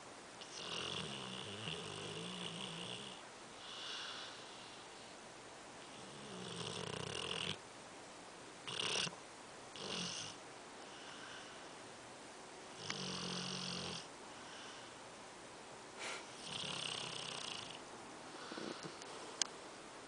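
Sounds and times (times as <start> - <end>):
dog snoring: 0.4 - 4.8, 5.8 - 7.6, 8.6 - 11.6, 12.7 - 14.9, 16.3 - 17.8, 18.4 - 19.0
dog snorting: 8.7 - 9.2.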